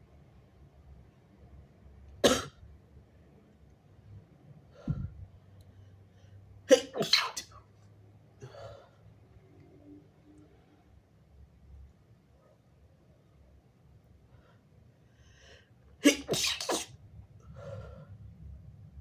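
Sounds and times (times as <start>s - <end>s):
person sneezing: 6.7s - 7.5s, 16.0s - 16.9s.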